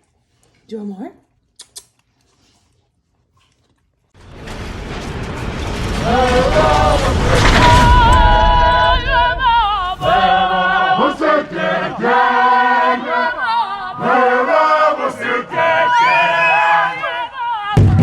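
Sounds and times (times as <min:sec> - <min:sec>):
a cappella harmony singing: 0:06.0 - 0:18.0.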